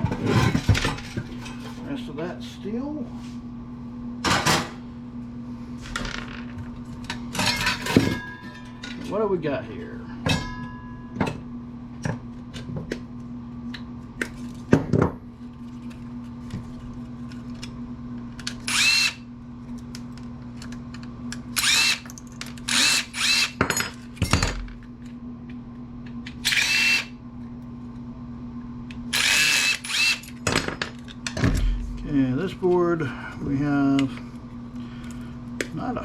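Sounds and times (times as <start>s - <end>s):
steady low hum: 0.0s - 36.0s
power drill whirring: 18.6s - 19.2s, 21.6s - 22.0s, 22.7s - 23.6s, 26.4s - 27.1s, 29.1s - 30.3s.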